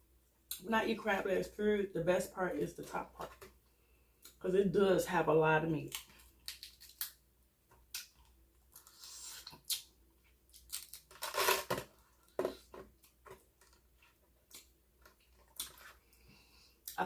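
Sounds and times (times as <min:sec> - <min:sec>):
crab shell cracking: 0:05.9 - 0:07.2, 0:10.5 - 0:11.7.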